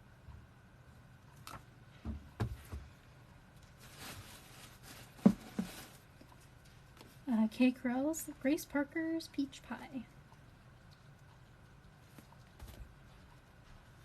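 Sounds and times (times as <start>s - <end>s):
books knocking and tapping: 2.0s - 2.9s, 5.2s - 5.8s.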